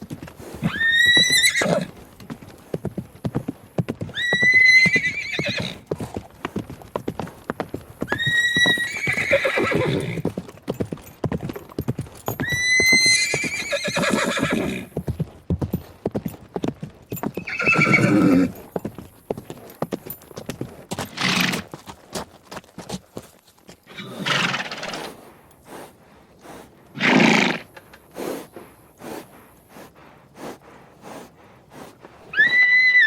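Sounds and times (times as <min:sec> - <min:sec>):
hooves clip-clopping: 0:00.0 - 0:33.0
horse whinnying: 0:00.6 - 0:02.0, 0:04.1 - 0:05.9, 0:08.1 - 0:10.2, 0:12.4 - 0:15.0, 0:17.3 - 0:18.6, 0:21.1 - 0:21.7, 0:23.9 - 0:25.1, 0:27.0 - 0:27.8, 0:32.3 - 0:33.0.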